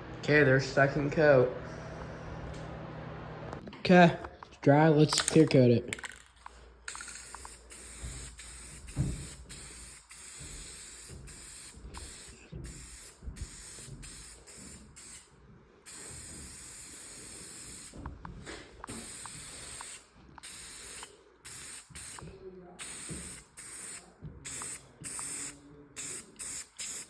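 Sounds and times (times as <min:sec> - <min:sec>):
aerosol spray can hissing: 0:06.9 - 0:15.3, 0:15.9 - 0:18.0, 0:18.9 - 0:22.2, 0:22.8 - 0:27.0
low thump: 0:08.9 - 0:09.4.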